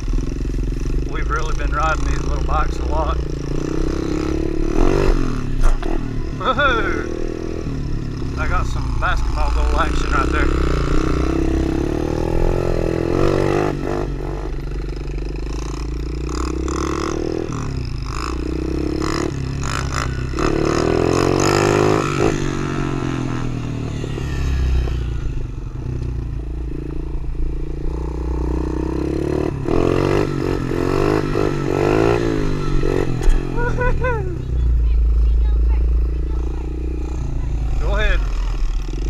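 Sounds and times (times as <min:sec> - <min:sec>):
bike rattling and scraping: 0:00.0 - 0:26.0
small motorbike engine revving: 0:00.0 - 0:26.8, 0:27.8 - 0:39.0.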